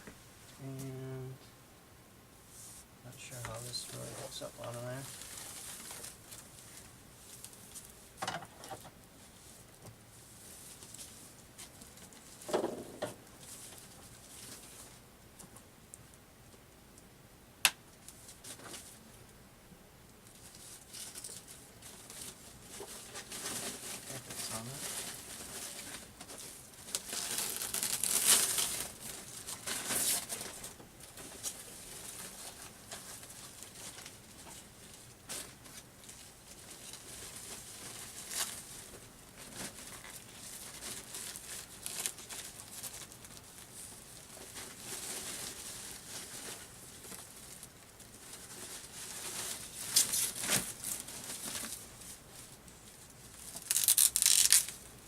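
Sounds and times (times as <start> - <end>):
plastic packaging crinkling: 3.7 - 7.9, 20.4 - 52.6, 53.3 - 54.9.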